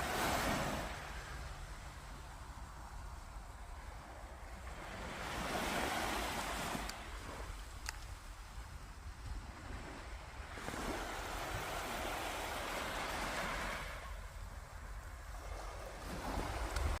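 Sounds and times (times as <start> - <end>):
sea waves washing onto beach: 0.0 - 17.0
wind rumble on microphone: 0.0 - 17.0.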